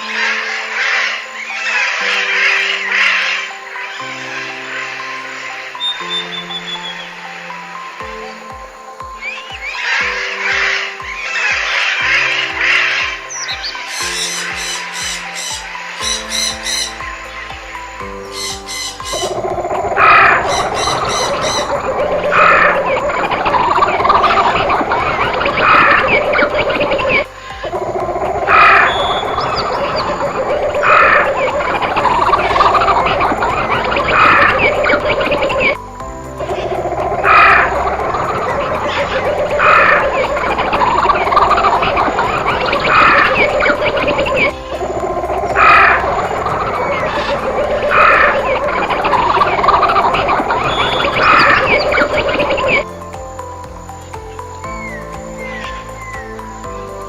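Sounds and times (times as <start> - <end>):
birds calling: 0.0 - 57.0
frogs calling: 0.0 - 57.0
sustained music tones: 0.0 - 57.0
loud harsh animal call: 9.2 - 17.5, 18.3 - 35.8, 36.4 - 52.9.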